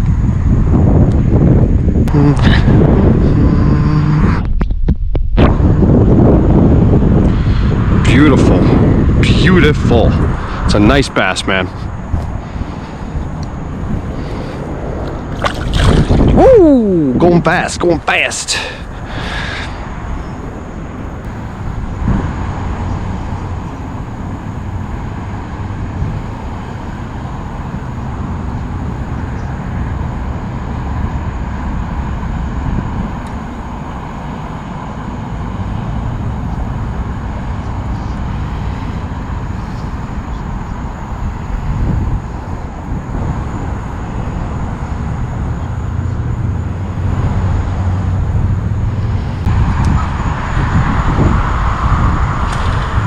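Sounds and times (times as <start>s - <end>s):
wind buffeting microphone: 0.0s - 53.0s.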